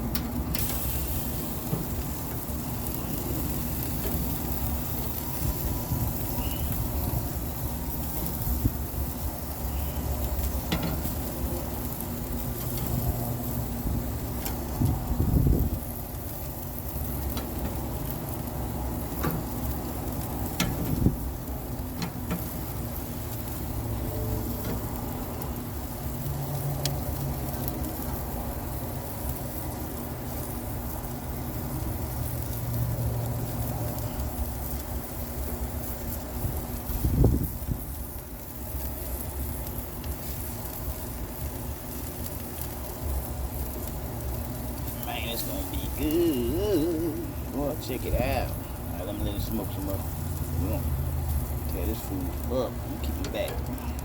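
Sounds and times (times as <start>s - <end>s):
meat sizzling on a grill: 0.0s - 54.0s.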